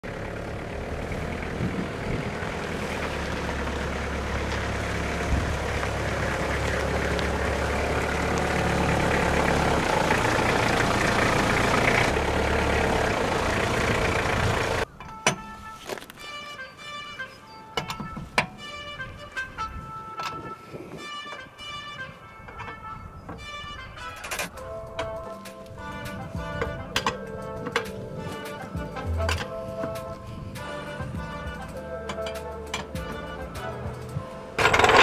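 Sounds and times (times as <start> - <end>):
van engine running: 0.0 - 14.9, 24.5 - 35.0
music: 15.1 - 34.9.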